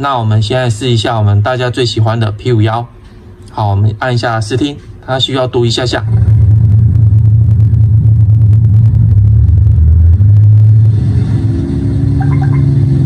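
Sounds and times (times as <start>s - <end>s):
simulated piston engine rumble: 4.9s - 13.0s.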